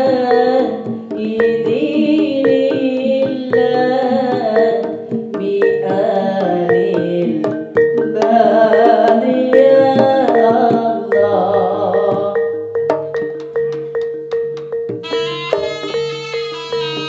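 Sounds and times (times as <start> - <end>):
person singing: 0.0 - 12.6
hand drums: 0.0 - 17.0
gong-chime notes: 11.6 - 17.0.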